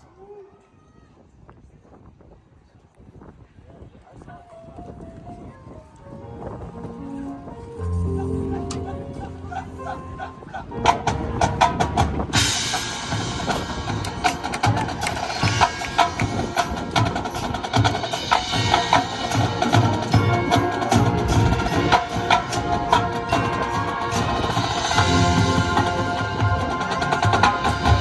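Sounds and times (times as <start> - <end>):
marching band playing: 7.9 - 28.0
rapid sharp percussion strikes: 10.8 - 28.0.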